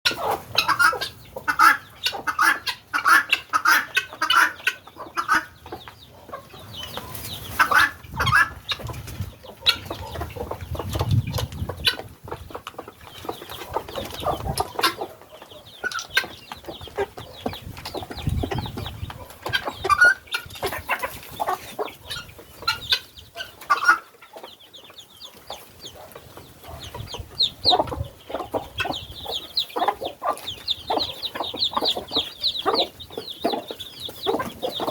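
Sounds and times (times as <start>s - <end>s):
guineafowl calling: 0.1s - 11.1s, 18.0s - 24.4s
chickens clucking: 0.1s - 34.9s.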